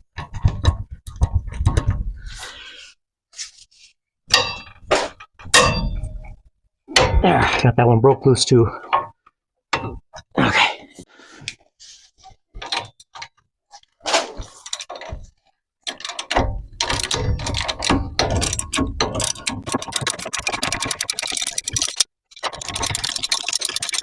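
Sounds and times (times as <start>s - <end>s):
ratchet clicking rapidly: 18.4s - 24.0s.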